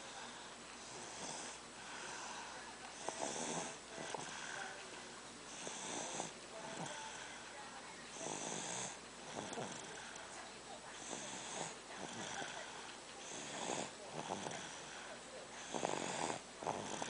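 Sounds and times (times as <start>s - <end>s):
person snoring: 1.0s - 4.8s, 8.2s - 10.2s, 13.3s - 17.0s.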